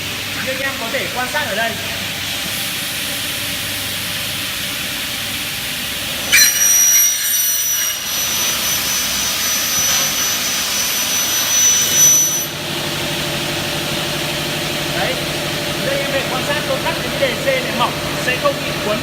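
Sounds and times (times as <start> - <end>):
saw running with steady hiss: 0.0 - 19.0
blade cutting aluminium whine: 6.1 - 12.6.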